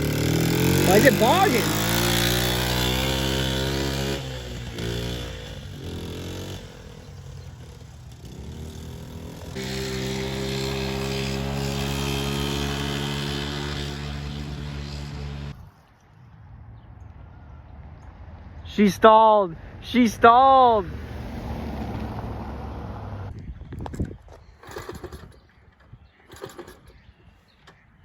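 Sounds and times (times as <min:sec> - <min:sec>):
small engine running and bogging: 0:00.0 - 0:15.6, 0:24.6 - 0:27.3.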